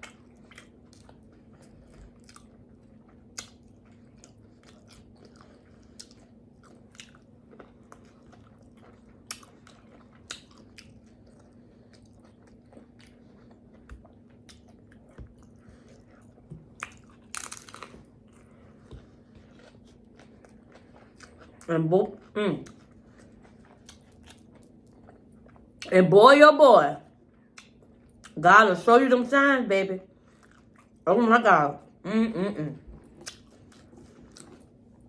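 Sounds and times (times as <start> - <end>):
chewing and biting food: 0.0 - 25.9, 33.0 - 35.0
faint steady hum: 0.0 - 35.0.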